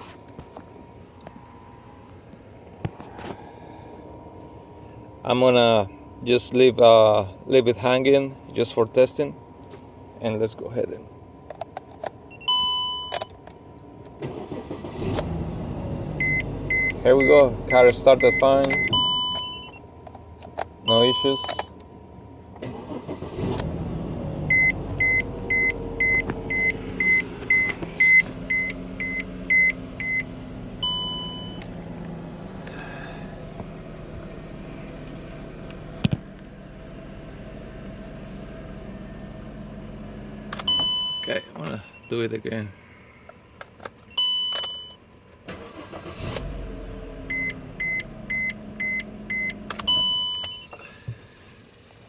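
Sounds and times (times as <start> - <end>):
car engine idling: 14.2 - 21.4, 22.0 - 41.0, 45.5 - 52.0
short high warning beeps: 16.2 - 19.8, 20.9 - 21.7, 24.5 - 30.2, 30.8 - 31.6, 40.7 - 42.2.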